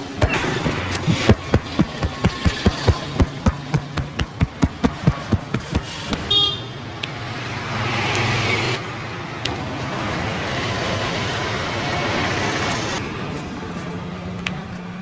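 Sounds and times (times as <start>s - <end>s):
street traffic noise: 0.0s - 15.0s
rhythmic hand slaps: 0.6s - 6.3s
vehicle horn toot: 6.3s - 6.8s.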